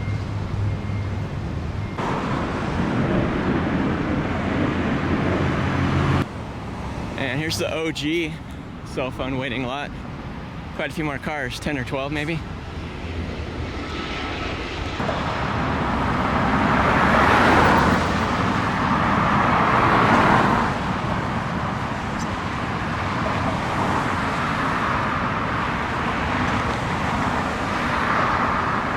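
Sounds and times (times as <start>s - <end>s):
road traffic rushing: 0.0s - 28.9s.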